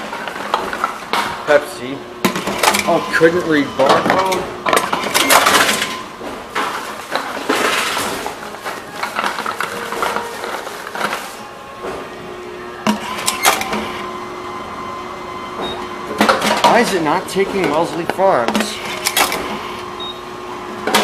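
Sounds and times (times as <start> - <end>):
machine humming: 0.0 - 21.0
vending machine mechanism whirring: 0.0 - 21.0
bottles clattering: 2.3 - 12.0.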